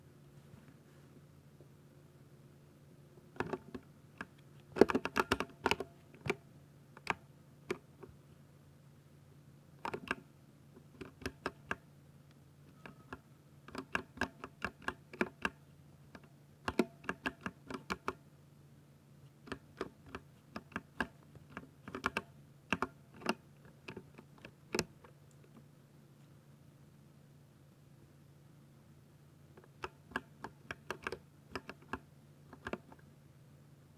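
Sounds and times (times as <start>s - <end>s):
mechanical keyboard typing: 3.4s - 5.9s, 12.7s - 15.6s, 16.7s - 18.2s, 19.5s - 24.9s, 29.7s - 33.0s.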